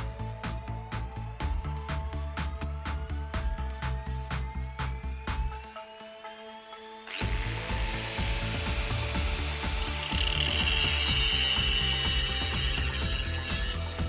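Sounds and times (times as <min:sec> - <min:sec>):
background music: 0:00.0 - 0:14.0
workshop tool rapid clicking: 0:07.5 - 0:14.0.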